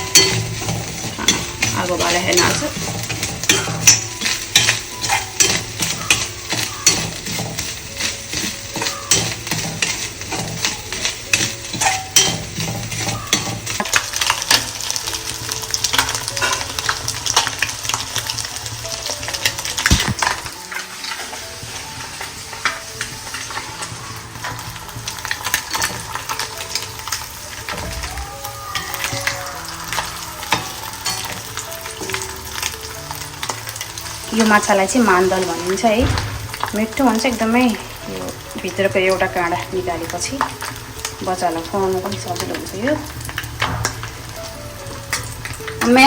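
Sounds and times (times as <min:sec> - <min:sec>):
metal spoon scraping pan: 0:00.0 - 0:17.7, 0:19.4 - 0:27.2
food sizzling: 0:00.0 - 0:46.0
spoon clicking against pan: 0:00.1 - 0:14.7.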